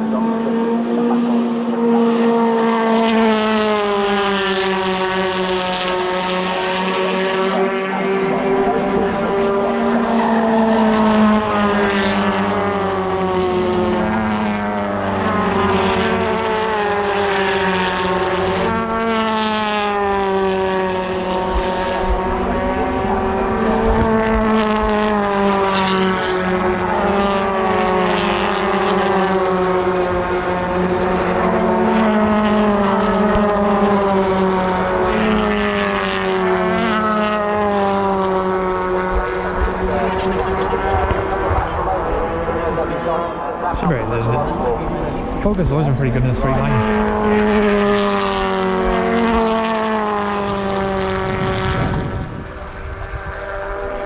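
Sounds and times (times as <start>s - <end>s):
race car engine shifting gears: 21.1s - 43.1s.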